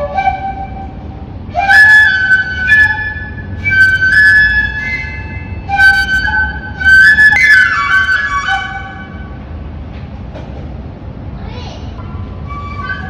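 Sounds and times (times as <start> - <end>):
flute playing: 0.0 - 9.4, 12.0 - 13.0.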